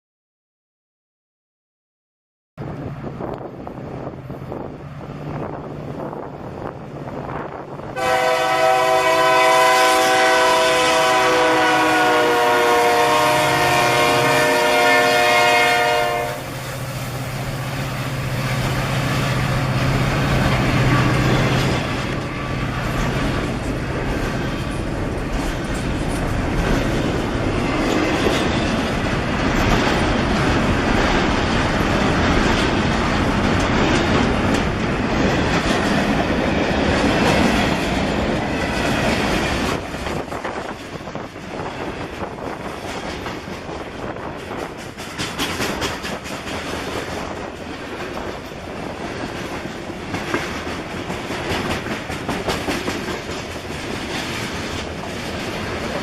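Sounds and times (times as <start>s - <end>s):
diesel locomotive engine drone: 2.6s - 56.0s
train cars rumbling and clattering: 2.6s - 56.0s
locomotive air horn: 8.0s - 16.7s.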